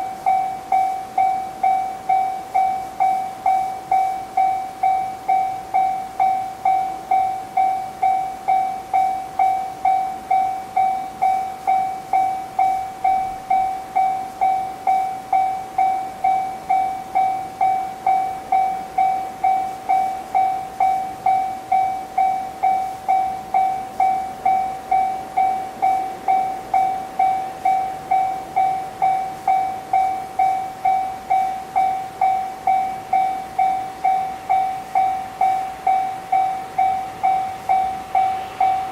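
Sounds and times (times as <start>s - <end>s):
level crossing warning bell: 0.0s - 38.9s.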